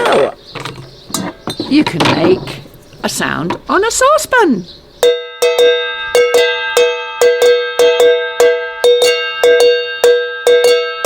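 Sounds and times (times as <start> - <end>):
spoon beating metal saucepan: 0.0 - 2.7.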